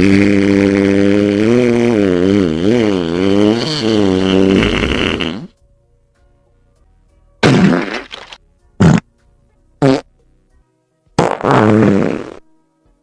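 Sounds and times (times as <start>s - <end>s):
long fart: 0.0s - 5.6s, 7.4s - 9.1s, 9.8s - 10.1s, 11.2s - 12.5s.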